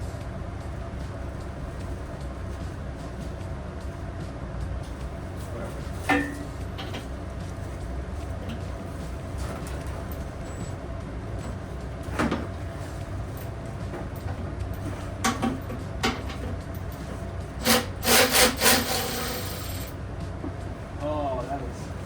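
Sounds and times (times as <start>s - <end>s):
steady low hum: 0.0s - 22.0s
hand tools scraping on engine: 17.6s - 20.0s.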